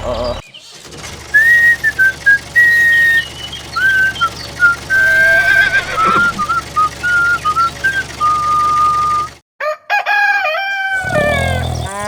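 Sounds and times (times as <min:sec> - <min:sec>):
short falling squeal: 0:01.3 - 0:09.3
whistled tune: 0:01.3 - 0:09.4.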